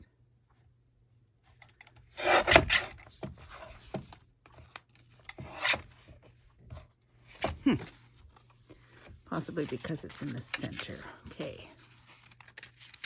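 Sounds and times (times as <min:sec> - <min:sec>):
paper cutter slicing paper: 0:02.1 - 0:04.0, 0:05.3 - 0:05.9.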